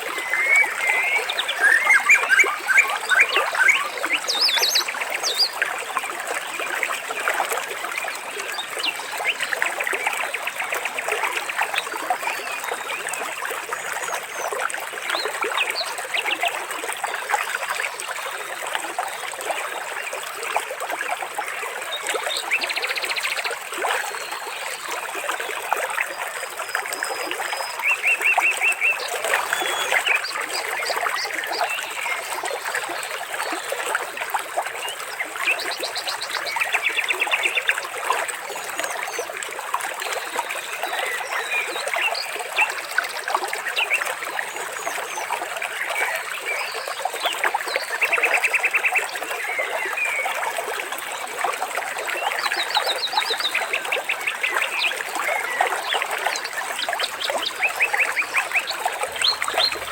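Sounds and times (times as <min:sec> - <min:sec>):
water trickling: 0:00.0 - 0:59.9
birds chirping: 0:57.0 - 0:59.9.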